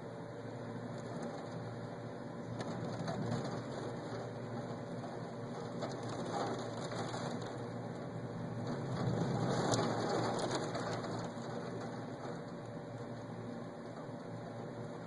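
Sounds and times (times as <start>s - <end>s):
steady rain hiss: 2.6s - 13.4s.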